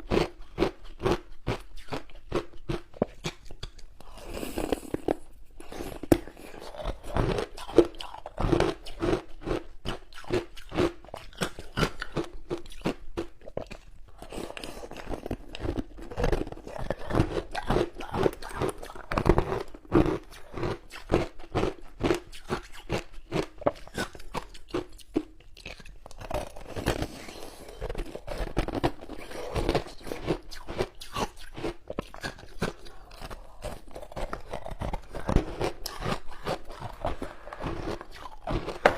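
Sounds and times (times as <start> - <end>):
crunching frozen ice: 13.6 - 22.2, 25.6 - 38.9.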